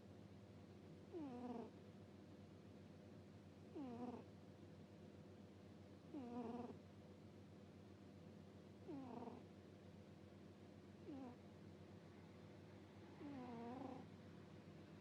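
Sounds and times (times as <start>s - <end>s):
cat snoring with whistling: 1.2s - 1.7s, 3.8s - 4.2s, 6.2s - 6.7s, 8.9s - 9.4s, 13.2s - 14.0s.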